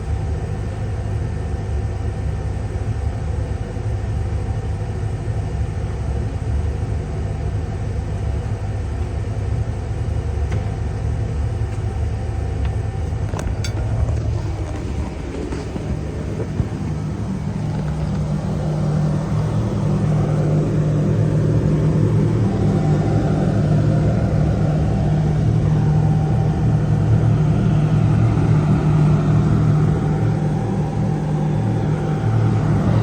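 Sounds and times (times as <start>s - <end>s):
welding arc buzzing hum: 8.6s - 33.0s.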